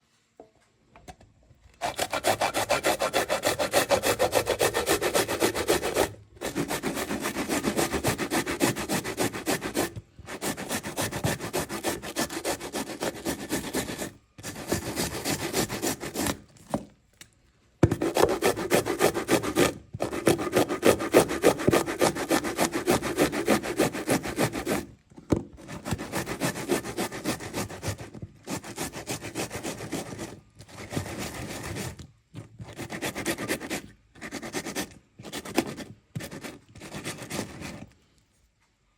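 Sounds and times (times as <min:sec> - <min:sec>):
tomato rasping on a grater: 0:01.8 - 0:16.5, 0:17.9 - 0:24.8.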